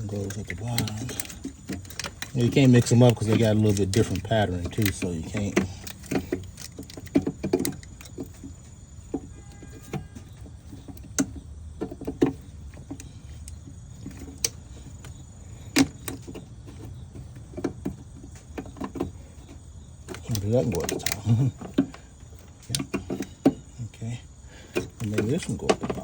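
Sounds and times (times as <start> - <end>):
plastic connectors clicking: 0.0 - 8.5, 20.0 - 22.0.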